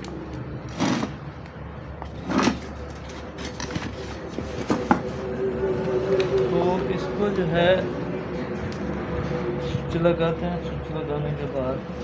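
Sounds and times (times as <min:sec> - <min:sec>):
rustling scraping sounds: 0:02.0 - 0:06.8.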